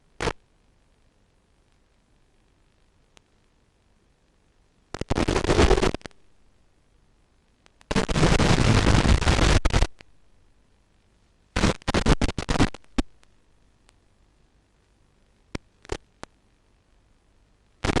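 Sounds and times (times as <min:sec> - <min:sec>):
radio receiver static: 0:00.0 - 0:00.4, 0:04.9 - 0:06.2, 0:07.8 - 0:10.0, 0:11.6 - 0:13.3, 0:15.5 - 0:16.3.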